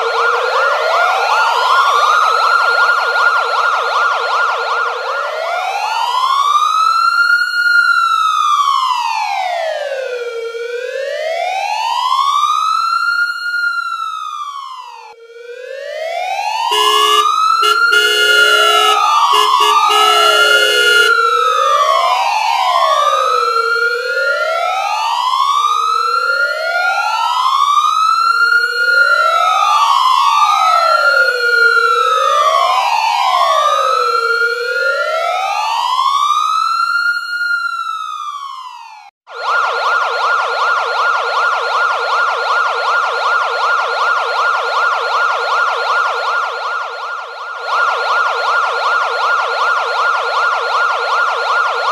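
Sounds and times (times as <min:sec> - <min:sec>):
police siren fast yelp: 0:00.0 - 0:06.8, 0:16.2 - 0:22.4, 0:37.7 - 0:51.9
police siren wailing: 0:00.0 - 0:12.8, 0:13.8 - 0:51.9.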